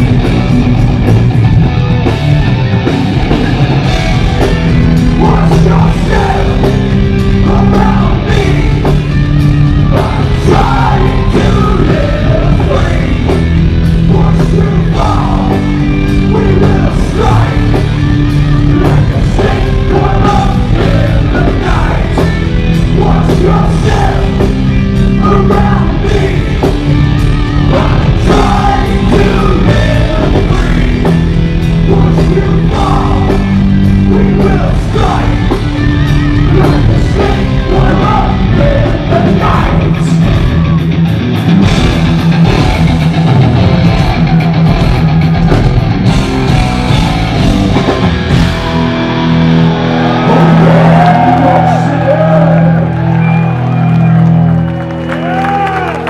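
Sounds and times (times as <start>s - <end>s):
distorted electric guitars: 0.0s - 56.0s
drums: 0.0s - 56.0s
man singing: 5.0s - 9.2s, 9.8s - 18.0s, 18.7s - 40.5s.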